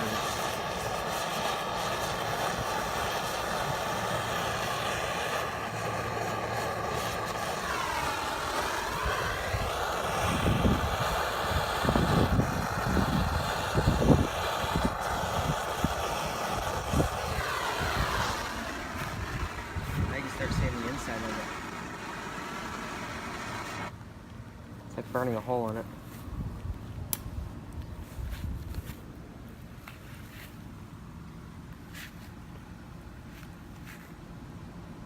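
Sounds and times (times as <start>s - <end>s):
propane torch hissing: 0.0s - 23.9s
wind buffeting: 0.2s - 23.9s.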